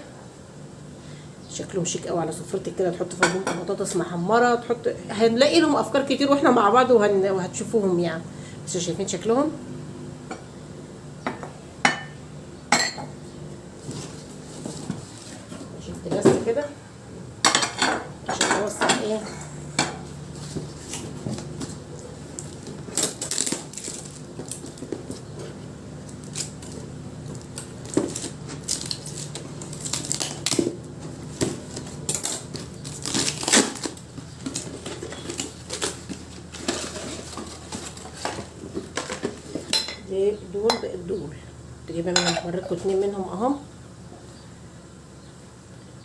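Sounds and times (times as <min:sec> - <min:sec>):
low steady hum: 0:00.0 - 0:46.0
packing material rustling: 0:20.3 - 0:25.3, 0:26.2 - 0:39.5.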